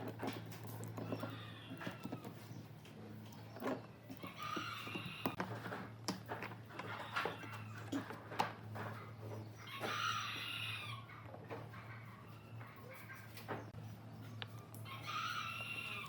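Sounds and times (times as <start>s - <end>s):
rooster crowing: 9.7s - 11.1s, 14.8s - 16.0s.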